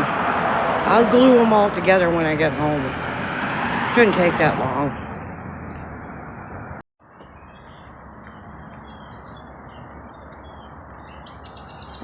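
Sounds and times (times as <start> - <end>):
outdoor background noise: 0.0 - 12.0.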